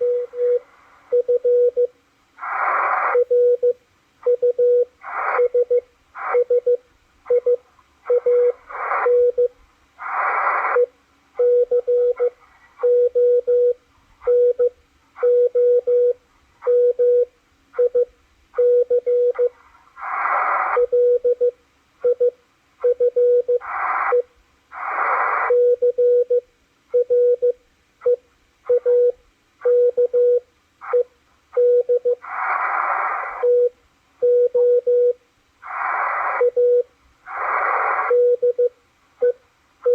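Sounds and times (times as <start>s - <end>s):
radio hiss: 0.0s - 1.2s, 2.3s - 3.7s, 4.9s - 6.6s, 7.3s - 10.9s, 19.3s - 21.2s, 23.4s - 25.8s, 32.1s - 33.7s, 35.6s - 38.6s
morse code tone: 0.0s - 1.9s, 6.4s - 9.5s, 37.8s - 39.9s.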